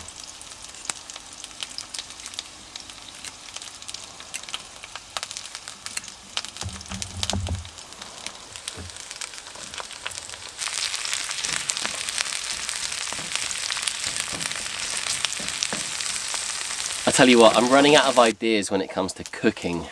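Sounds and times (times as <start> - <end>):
food sizzling in oil: 0.0 - 18.4
short low thump: 6.6 - 7.8.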